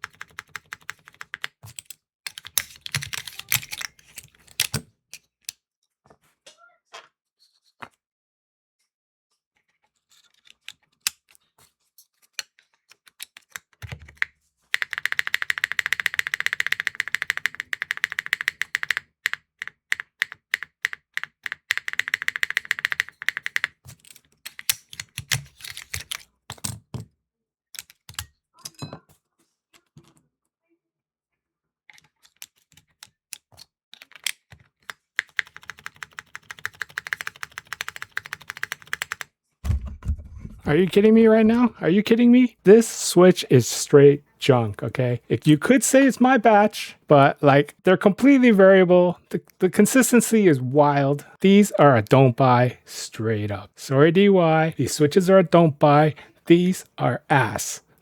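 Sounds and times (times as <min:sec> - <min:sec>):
mechanical keyboard typing: 0:00.0 - 0:03.9, 0:14.8 - 0:23.8, 0:34.9 - 0:39.3.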